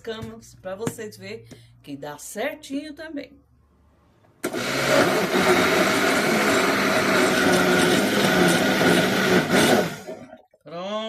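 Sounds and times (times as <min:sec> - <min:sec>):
blender running: 0:04.4 - 0:10.3.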